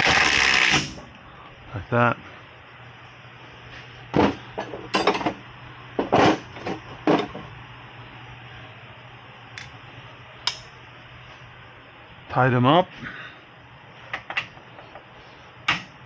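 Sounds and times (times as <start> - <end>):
low steady hum: 0.0 - 16.0
metal tools clanking: 4.6 - 5.4.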